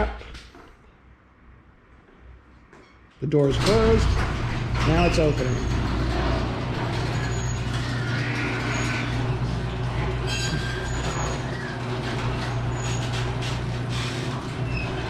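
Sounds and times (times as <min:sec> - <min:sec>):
garage door rumbling and clicking: 0:03.4 - 0:15.0
garage door opener motor hum: 0:03.5 - 0:15.0.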